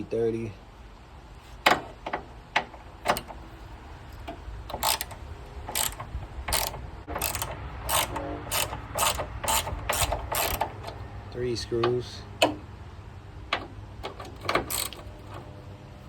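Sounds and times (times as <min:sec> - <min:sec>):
hand ratchet clicking: 0:04.3 - 0:11.0, 0:13.5 - 0:15.4.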